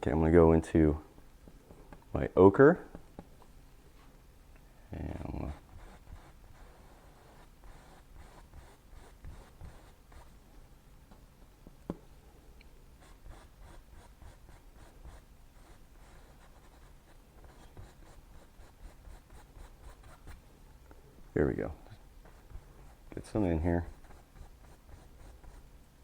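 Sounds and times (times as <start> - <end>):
brush scratching on canvas: 5.1 - 10.4, 13.0 - 20.4, 21.8 - 25.6.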